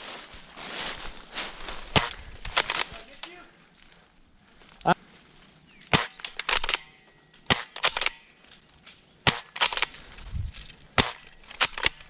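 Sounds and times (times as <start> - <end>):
airsoft guns firing: 1.9 - 2.9, 5.9 - 8.3, 9.2 - 10.0, 11.0 - 12.0.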